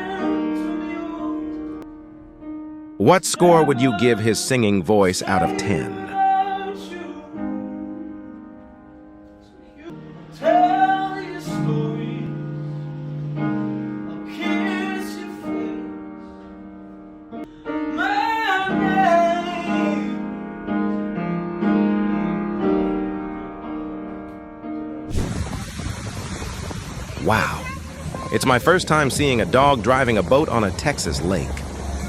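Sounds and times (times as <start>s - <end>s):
piano playing: 0.0s - 25.3s.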